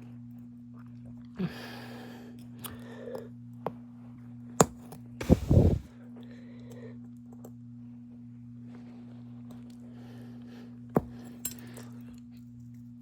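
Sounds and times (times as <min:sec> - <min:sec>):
low electrical hum: 0:00.0 - 0:13.0
short scrape: 0:05.2 - 0:05.9.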